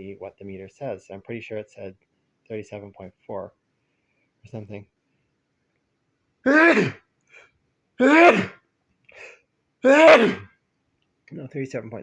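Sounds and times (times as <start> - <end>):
man sneezing: 6.5 - 7.1, 8.0 - 8.6, 9.2 - 10.5.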